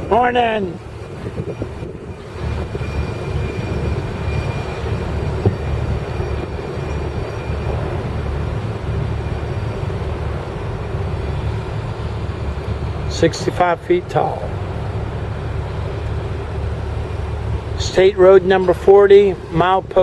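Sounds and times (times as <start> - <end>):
motor boat running: 0.0 - 20.0
faint high whine: 2.0 - 14.6.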